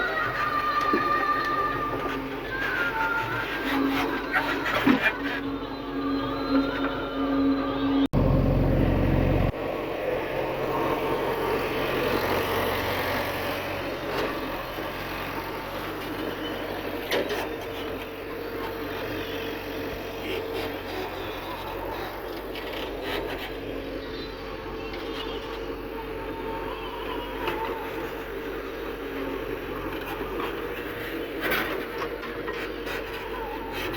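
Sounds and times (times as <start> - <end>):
diesel engines running: 0.0 - 33.9
loud low rumble: 8.1 - 11.8.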